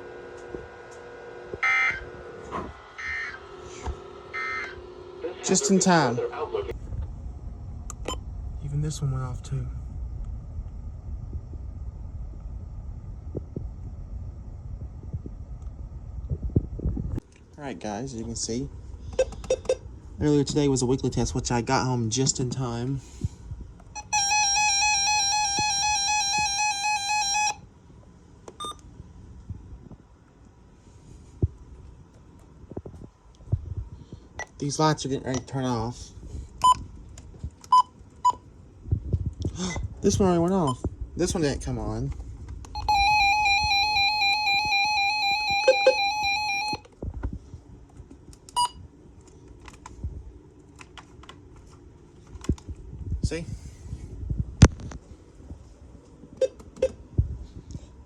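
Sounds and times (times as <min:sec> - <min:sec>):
electronic alert beep: 0:42.8 - 0:46.8
short higher beep: 0:42.8 - 0:46.8.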